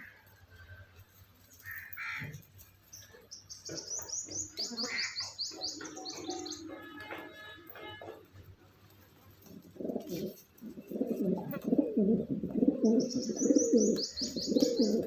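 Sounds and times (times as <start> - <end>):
pigeons cooing: 4.6 - 6.8, 9.4 - 15.0.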